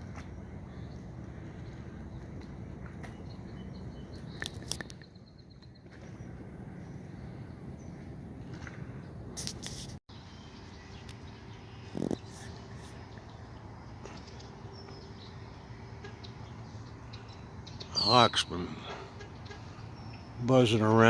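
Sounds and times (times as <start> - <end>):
creekside rushing water: 16.3 - 21.0.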